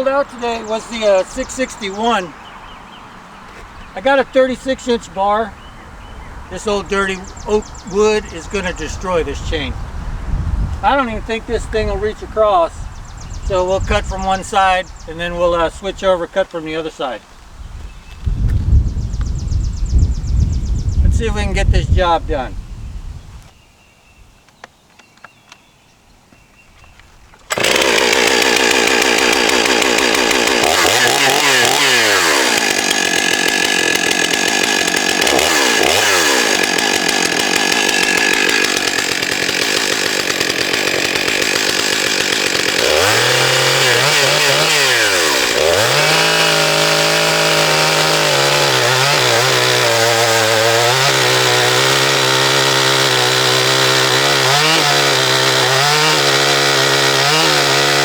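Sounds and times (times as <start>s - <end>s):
chainsaw cutting log: 0.0s - 2.4s, 6.5s - 9.7s, 27.4s - 58.0s.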